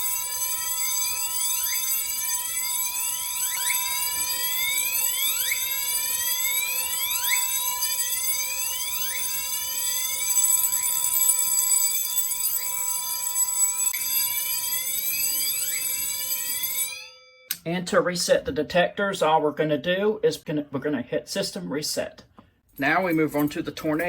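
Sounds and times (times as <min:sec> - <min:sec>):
fire alarm whoop sweeps: 0:00.0 - 0:17.1
steady alarm tone: 0:00.0 - 0:17.6.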